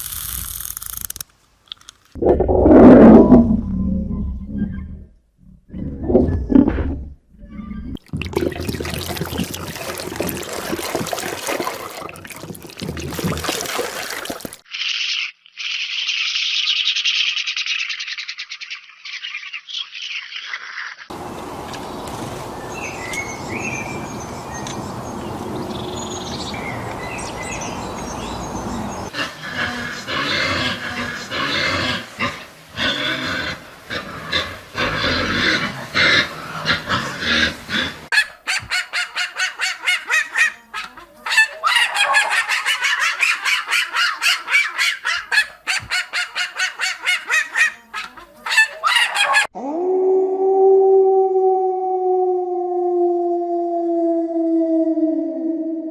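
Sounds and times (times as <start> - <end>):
outdoor background hiss: 0.0 - 2.2, 21.1 - 38.1
birds chirping: 21.1 - 30.2
waterfowl honking calls: 21.1 - 49.5.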